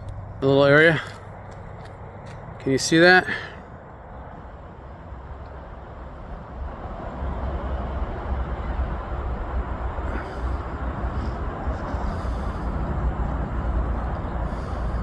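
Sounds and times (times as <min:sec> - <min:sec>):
freeway traffic rushing: 0:00.0 - 0:15.0.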